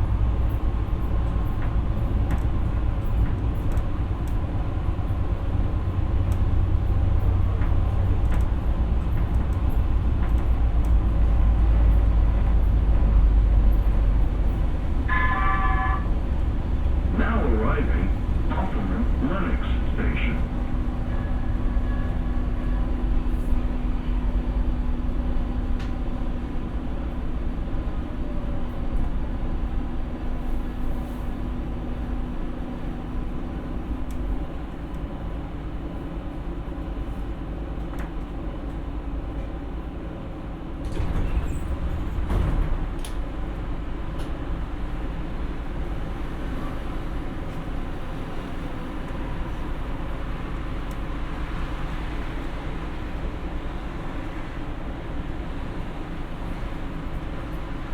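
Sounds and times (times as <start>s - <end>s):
light rail car running noise: 0.0s - 57.9s.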